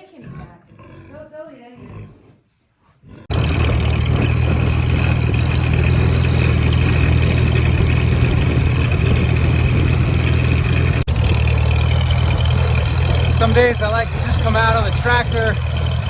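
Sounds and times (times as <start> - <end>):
tractor engine running: 3.3 - 16.0.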